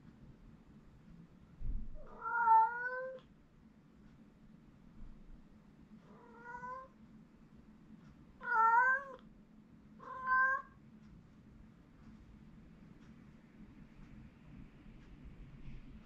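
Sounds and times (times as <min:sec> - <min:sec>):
cat meowing: 0:02.0 - 0:03.2, 0:06.1 - 0:06.9, 0:08.4 - 0:09.2, 0:10.0 - 0:10.8.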